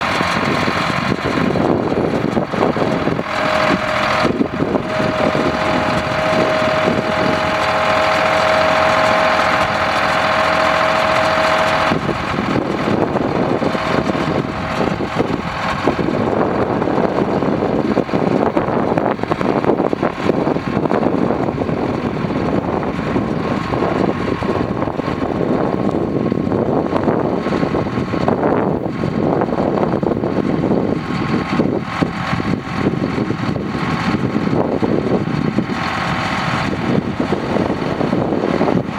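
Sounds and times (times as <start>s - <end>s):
steady whine: 0.0s - 28.9s
drilling rig engine running: 0.0s - 38.9s.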